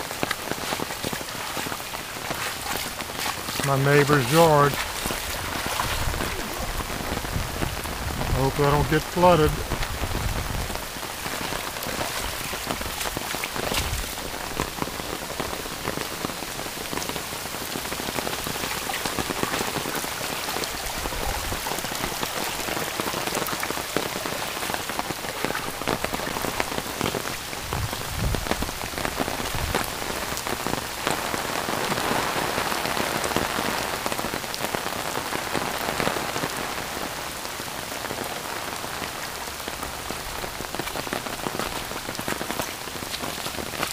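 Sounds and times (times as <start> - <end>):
heavy rain falling: 0.0 - 43.9
low rumbles: 1.0 - 14.8.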